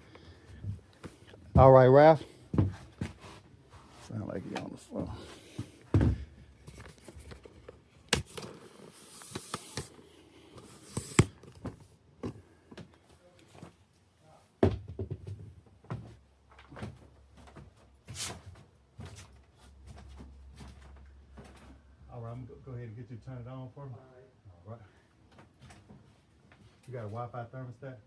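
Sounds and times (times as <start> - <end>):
knocks and clunks of handling: 2.5 - 3.2, 5.4 - 8.6, 14.6 - 17.8.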